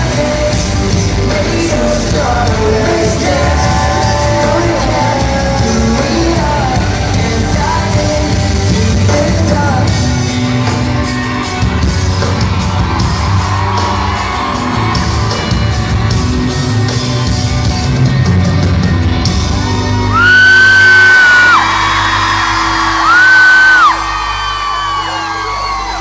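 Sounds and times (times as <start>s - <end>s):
pop-rock band playing: 0.0s - 26.0s
crowd screaming: 10.3s - 17.4s, 19.3s - 26.0s
fan screaming: 20.1s - 26.0s.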